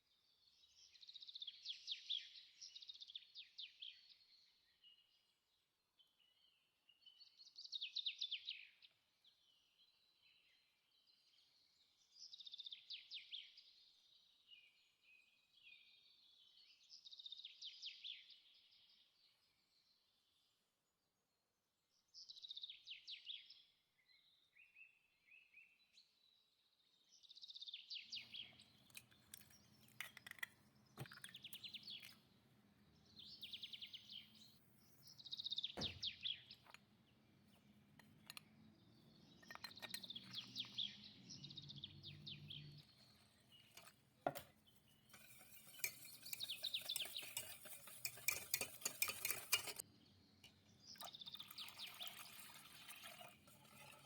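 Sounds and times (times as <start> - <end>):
utensil scraping a bowl: 42.8 - 49.8.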